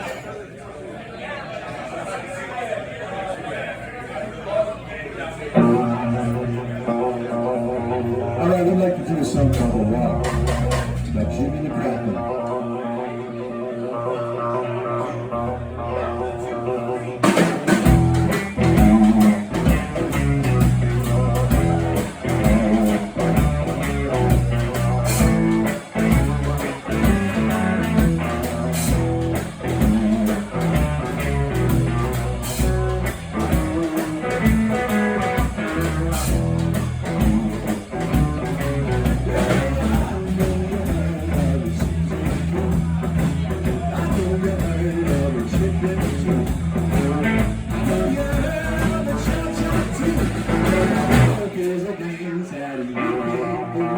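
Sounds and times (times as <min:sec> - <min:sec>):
blues-rock band playing: 0:05.6 - 0:51.9
electric guitar: 0:05.6 - 0:53.9
drum kit: 0:09.2 - 0:11.6, 0:17.2 - 0:51.6.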